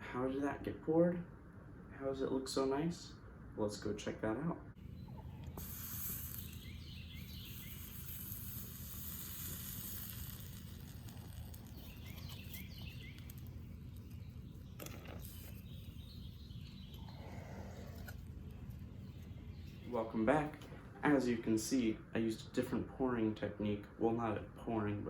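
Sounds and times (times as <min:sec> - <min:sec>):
faint bird chirps: 0:04.8 - 0:08.4, 0:11.2 - 0:20.0.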